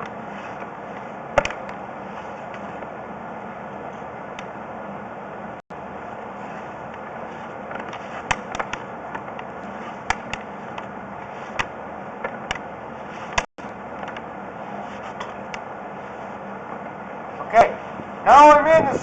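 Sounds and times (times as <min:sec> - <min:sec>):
faint hum: 0:00.0 - 0:19.0
cable clicking and tapping in pipe: 0:07.7 - 0:10.9.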